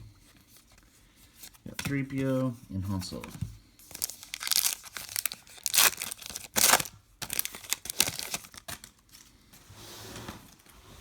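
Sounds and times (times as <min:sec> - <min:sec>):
foil wrapper tearing and crinkling: 0:03.9 - 0:09.0.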